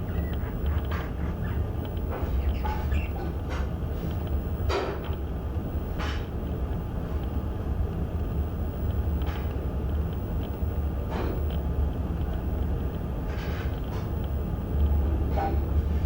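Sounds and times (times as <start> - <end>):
bird calls and clicks: 0.0 - 3.7
steady low rumble: 0.0 - 4.7.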